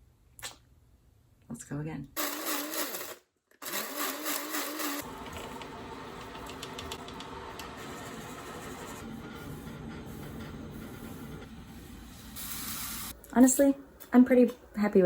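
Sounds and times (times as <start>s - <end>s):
coffee grinder motor running: 2.2s - 5.6s.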